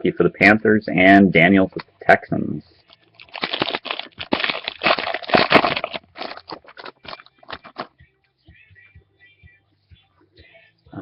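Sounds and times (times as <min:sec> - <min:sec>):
cards rustling and clicking: 0:02.9 - 0:07.9
wrapper being torn and crinkled: 0:02.9 - 0:07.9.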